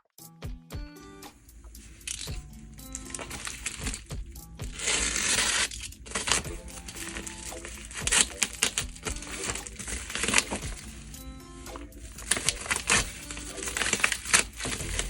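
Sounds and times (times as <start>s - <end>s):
background music: 0.0s - 15.0s
packaging crinkling: 1.4s - 15.0s.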